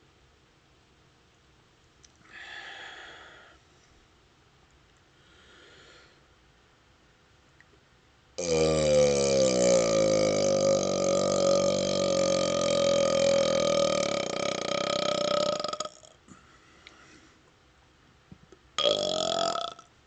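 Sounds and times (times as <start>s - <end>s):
man's long loud burp: 8.4s - 16.2s, 18.8s - 19.9s.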